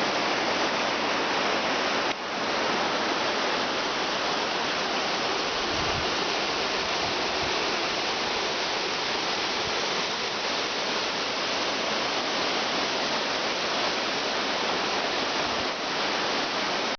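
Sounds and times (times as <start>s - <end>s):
waterfall roaring: 0.0s - 16.9s.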